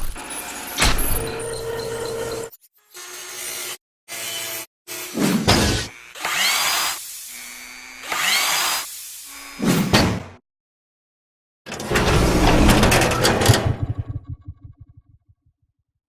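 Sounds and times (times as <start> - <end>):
rough power tool noise: 0.0 - 9.7.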